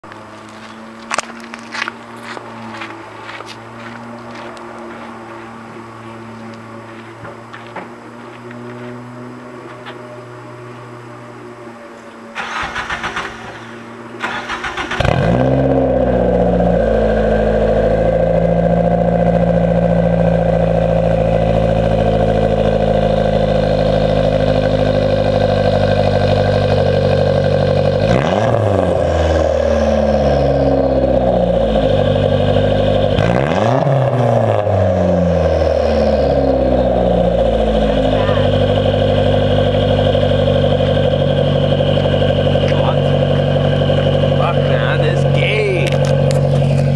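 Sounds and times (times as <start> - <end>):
car engine idling: 0.0 - 46.9
car engine cranking: 12.3 - 46.9
engine revving: 12.3 - 46.9.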